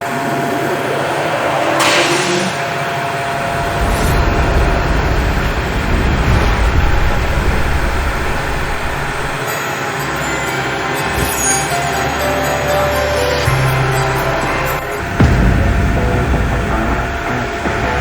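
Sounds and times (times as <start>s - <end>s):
loud mechanical din: 0.0s - 9.9s, 14.8s - 18.0s
short loud hiss: 1.5s - 4.6s
deep rumble: 3.2s - 9.4s, 15.0s - 18.0s.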